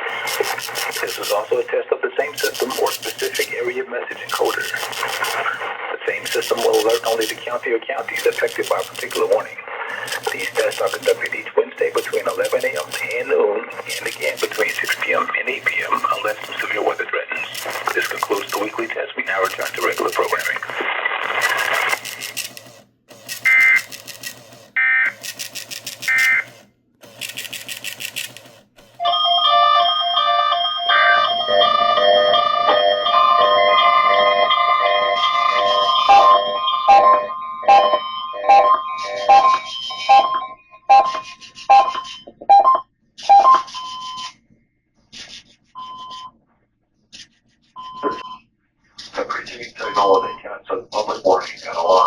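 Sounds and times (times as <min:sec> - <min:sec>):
buzzy digital data tones: 0:00.0 - 0:01.7, 0:02.3 - 0:20.7, 0:21.3 - 0:22.5, 0:33.8 - 0:41.4
electronic tones stepping in pitch: 0:30.3 - 0:41.0.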